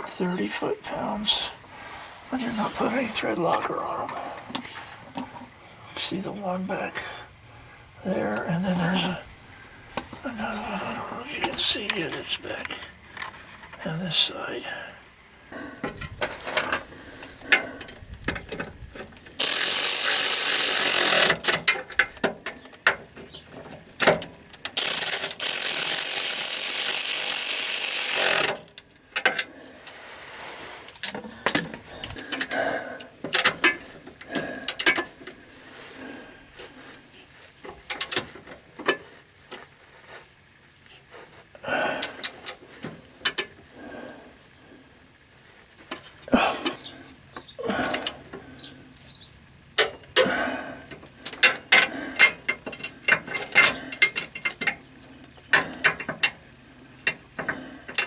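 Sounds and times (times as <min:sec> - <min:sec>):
ratchet clicks: 0:19.2 - 0:21.8, 0:24.1 - 0:29.4
metal parts clattering: 0:24.7 - 0:28.8.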